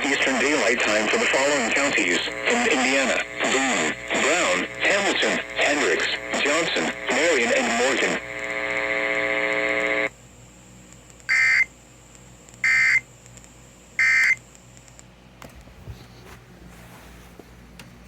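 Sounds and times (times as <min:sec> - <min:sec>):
alert data noise bursts: 0:00.0 - 0:10.1, 0:11.3 - 0:11.7, 0:12.6 - 0:13.1, 0:13.9 - 0:14.4
steady buzzy tone: 0:00.0 - 0:10.2.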